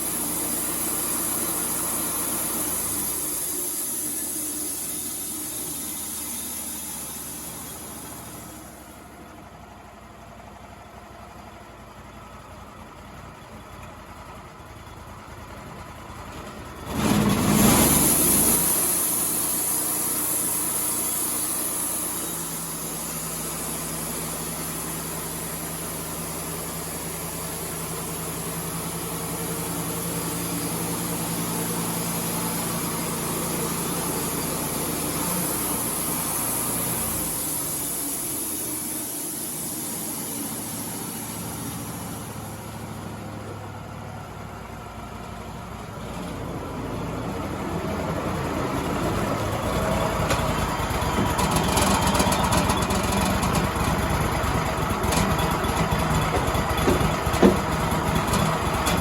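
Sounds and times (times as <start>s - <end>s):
band saw blade hissing through log: 0.0s - 9.2s, 17.1s - 43.4s
sawmill engine running: 0.0s - 59.0s.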